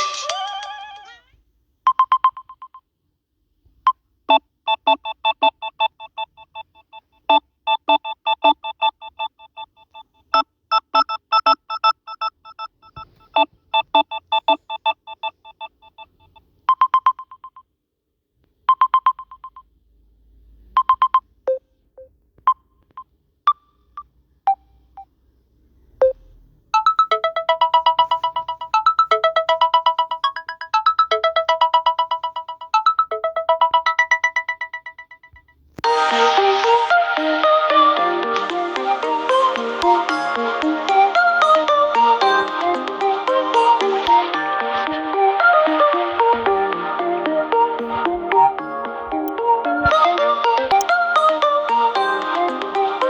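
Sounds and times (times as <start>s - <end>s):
phone ringtone melodies: 7.7s - 10.0s, 11.0s - 16.4s, 26.8s - 53.0s.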